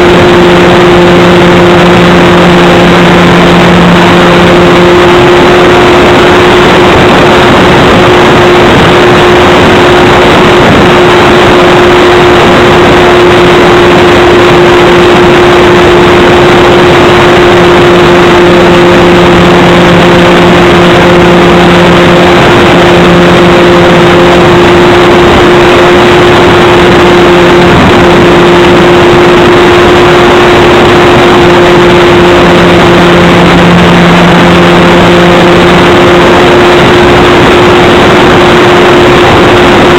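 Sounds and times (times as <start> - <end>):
distorted wind noise: 0.0 - 39.9
electric motor and propeller: 0.0 - 39.9.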